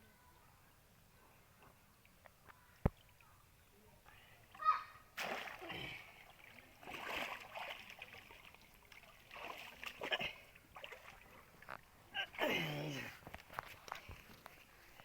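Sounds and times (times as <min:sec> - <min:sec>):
water sloshing and splashing: 0:05.1 - 0:12.5.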